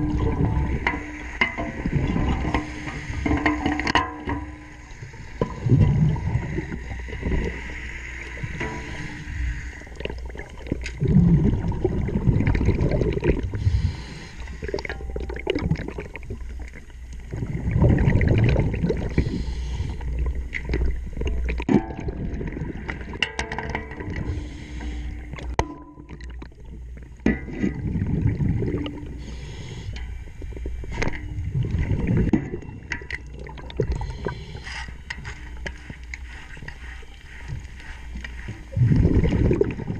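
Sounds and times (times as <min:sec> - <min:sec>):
diver exhaust bubbles: 0:00.0 - 0:03.7, 0:05.2 - 0:23.2, 0:27.4 - 0:29.9, 0:31.3 - 0:32.6, 0:38.7 - 0:39.9
low underwater rumble: 0:00.0 - 0:39.9
sharp clicks and knocks: 0:23.1 - 0:26.5.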